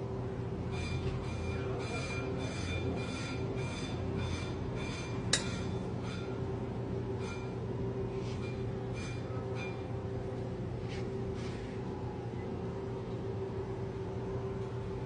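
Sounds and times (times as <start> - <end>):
steady low hum: 0.0 - 15.0
pulsing brake squeal: 0.7 - 5.2.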